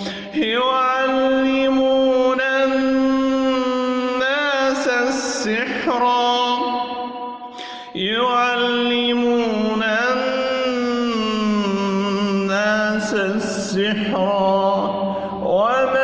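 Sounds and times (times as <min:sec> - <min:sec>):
brief breath: 0:00.0 - 0:00.3, 0:07.4 - 0:08.0
man chanting melodically: 0:00.0 - 0:16.0.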